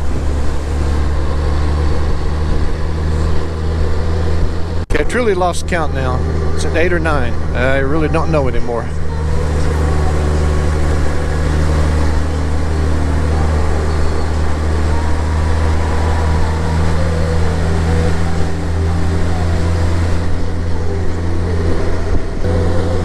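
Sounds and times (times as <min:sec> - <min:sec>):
motorcycle engine running: 0:00.0 - 0:23.0
road noise: 0:00.0 - 0:23.0
wind noise: 0:00.0 - 0:23.0.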